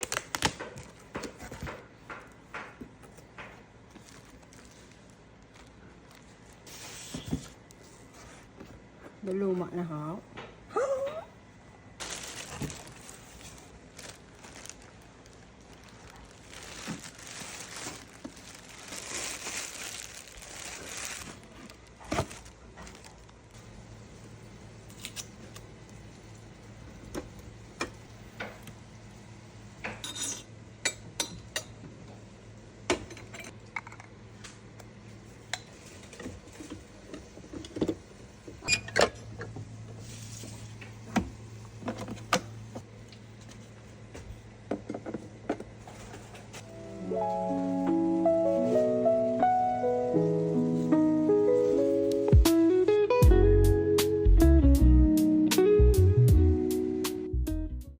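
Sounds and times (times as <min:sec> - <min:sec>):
packaging rustling: 0:00.0 - 0:01.6, 0:03.9 - 0:07.6, 0:12.0 - 0:23.6.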